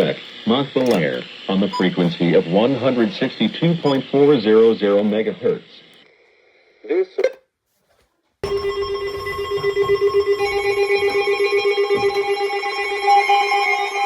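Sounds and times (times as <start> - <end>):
synthesized chord wavering: 8.4 - 14.0.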